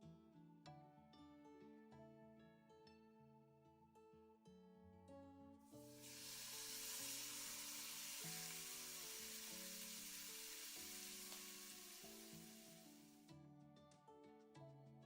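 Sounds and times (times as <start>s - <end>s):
soft background music: 0.0s - 15.0s
food sizzling in a pan: 5.8s - 13.3s.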